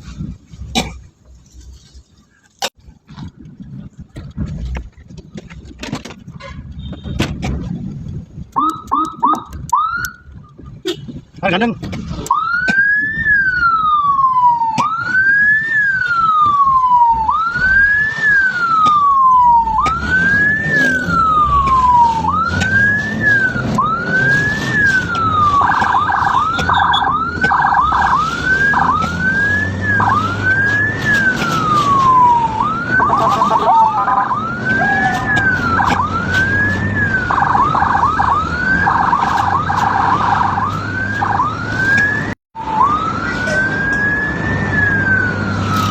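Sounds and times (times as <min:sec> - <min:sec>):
low vehicle rumble: 0:00.0 - 0:45.9
ambulance siren wailing: 0:08.6 - 0:10.4, 0:12.1 - 0:45.9
rapid siren warble: 0:12.3 - 0:45.9.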